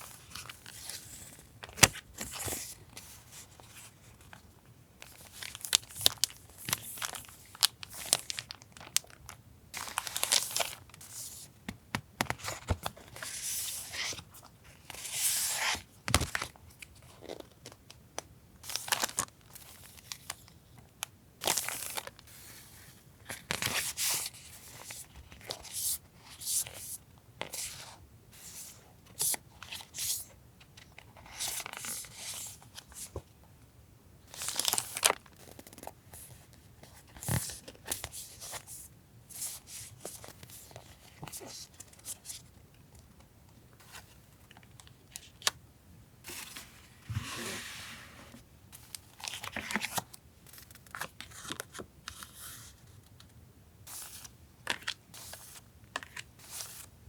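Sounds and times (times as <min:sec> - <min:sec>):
paper rustling and crinkling: 0:46.2 - 0:53.0.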